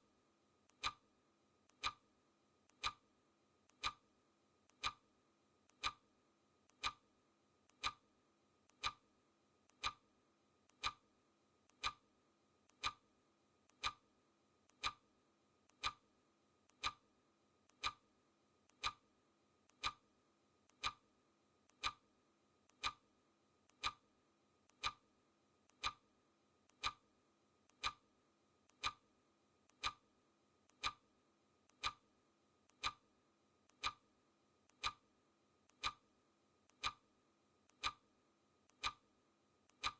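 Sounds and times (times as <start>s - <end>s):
timer clock ticking: 0.7s - 1.0s, 1.7s - 2.0s, 2.7s - 3.0s, 3.7s - 4.0s, 4.7s - 5.0s, 5.7s - 6.0s, 6.7s - 7.0s, 7.7s - 8.0s, 8.7s - 9.0s, 9.7s - 10.0s, 10.7s - 11.0s, 11.7s - 12.0s, 12.7s - 13.0s, 13.7s - 14.0s, 14.7s - 15.0s, 15.7s - 16.0s, 16.7s - 17.0s, 17.7s - 18.0s, 18.7s - 19.0s, 19.7s - 20.0s, 20.7s - 21.0s, 21.7s - 22.0s, 22.7s - 23.0s, 23.7s - 24.0s, 24.7s - 25.0s, 25.7s - 26.0s, 26.7s - 27.0s, 27.7s - 28.0s, 28.7s - 29.0s, 29.7s - 30.0s, 30.7s - 31.0s, 31.7s - 32.0s, 32.7s - 33.0s, 33.7s - 34.0s, 34.7s - 35.0s, 35.7s - 36.1s, 36.7s - 37.0s, 37.7s - 38.0s, 38.7s - 39.0s.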